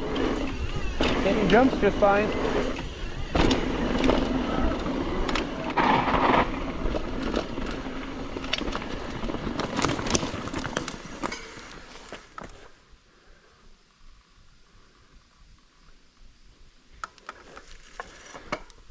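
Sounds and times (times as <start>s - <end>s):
bike clattering: 0.0s - 12.6s
bike tyres on dirt and gravel: 0.0s - 18.9s.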